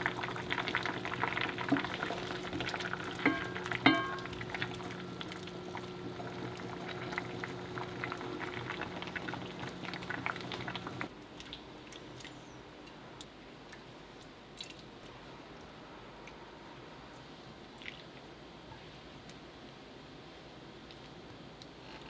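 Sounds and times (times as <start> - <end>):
food sizzling in a frying pan: 0.0 - 11.1
steady low hum: 0.0 - 11.1.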